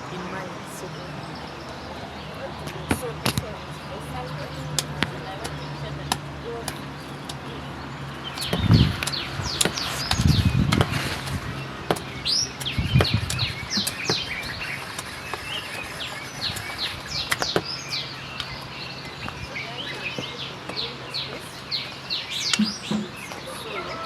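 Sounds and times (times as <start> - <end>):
small birds chirping: 0.0 - 24.0
low thumps: 8.4 - 14.6.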